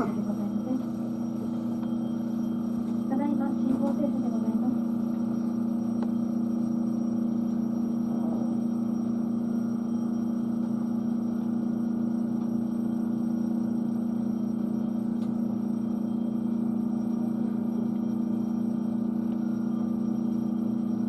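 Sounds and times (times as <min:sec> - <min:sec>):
low hum in train carriage: 0:02.7 - 0:05.2.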